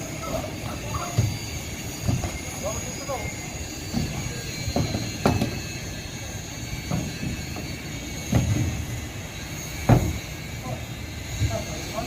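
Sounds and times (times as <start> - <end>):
machinery hum: 0.0 - 12.0
sharp metallic knocks: 3.9 - 5.8, 9.8 - 10.3.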